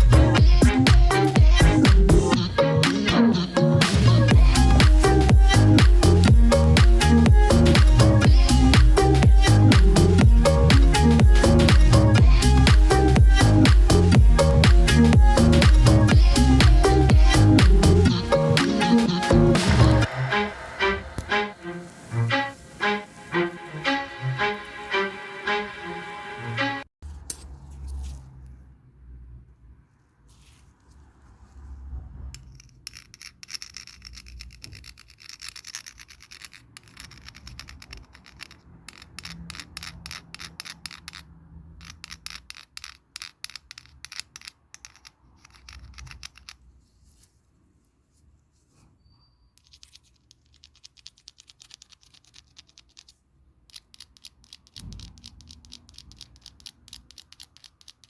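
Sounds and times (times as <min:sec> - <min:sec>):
scratching and rubbing: 0:00.0 - 0:03.2, 0:03.8 - 0:20.5, 0:30.2 - 0:47.5, 0:49.6 - 0:58.0
small clicks: 0:49.7 - 0:58.0.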